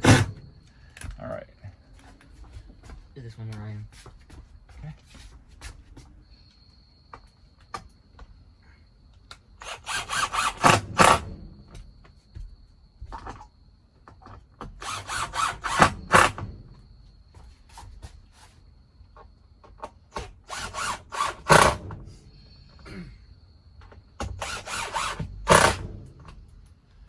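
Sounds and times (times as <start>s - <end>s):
power drill driving screws: 0.0s - 0.4s, 9.6s - 11.3s, 14.6s - 16.5s, 20.1s - 21.9s, 24.2s - 26.0s
small knocks and clicks: 11.6s - 14.8s.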